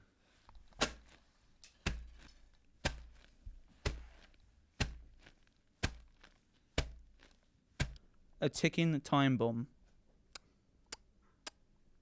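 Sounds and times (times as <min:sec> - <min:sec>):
footsteps crunching on snow: 0:00.6 - 0:08.0.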